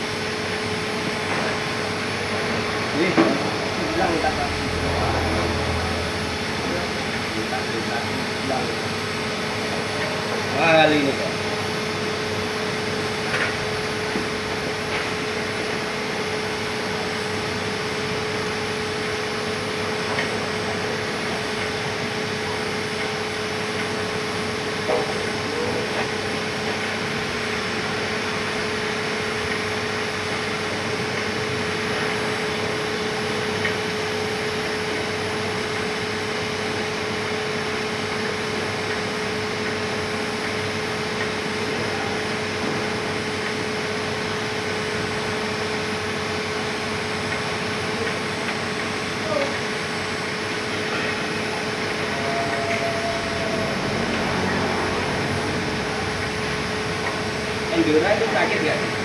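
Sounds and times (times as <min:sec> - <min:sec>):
constant hum: 0:01.0 - 0:12.0, 0:50.4 - 0:59.0.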